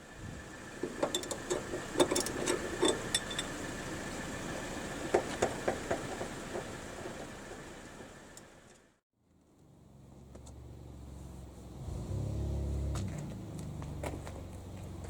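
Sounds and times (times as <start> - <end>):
sharp clicks and knocks: 0.8 - 3.5, 5.1 - 7.3.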